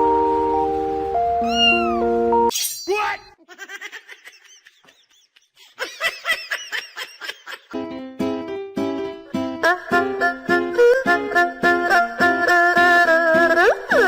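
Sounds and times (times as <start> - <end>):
background music with held notes: 0.0 - 2.5, 7.7 - 14.0
cat meowing: 1.4 - 2.1
high-pitched cat mews: 1.4 - 2.1.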